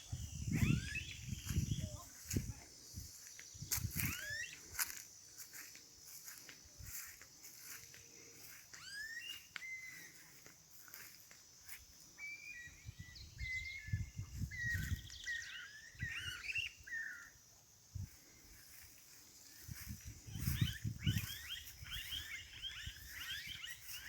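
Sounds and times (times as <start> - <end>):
small birds chirping and whistling: 0.0 - 17.4, 18.0 - 24.0
high insect-like hum: 0.0 - 24.0.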